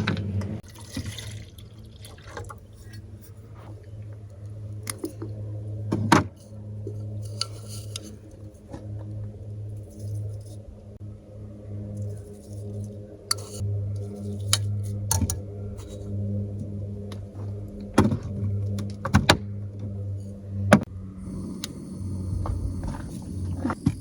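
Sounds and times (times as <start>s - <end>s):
steady low hum: 0.0s - 24.0s
water being poured: 0.6s - 2.8s.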